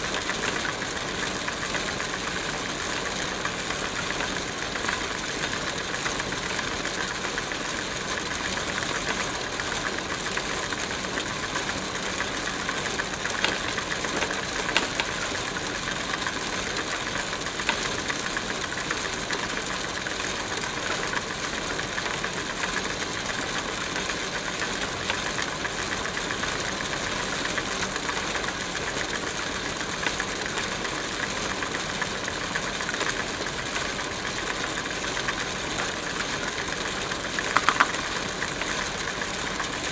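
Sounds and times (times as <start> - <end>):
bicycle rattling whir: 0.0 - 39.9
bicycle clicks: 8.2 - 19.6, 35.8 - 39.0.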